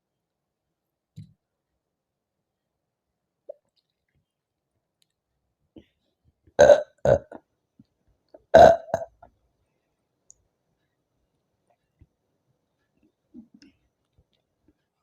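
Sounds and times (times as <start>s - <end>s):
woman burping: 6.6s - 7.4s, 8.5s - 9.2s.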